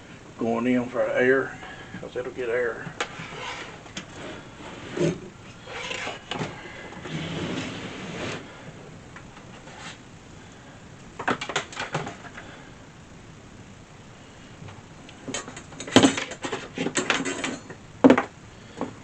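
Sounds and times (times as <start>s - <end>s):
handling clicks and knocks: 15.2s - 19.0s.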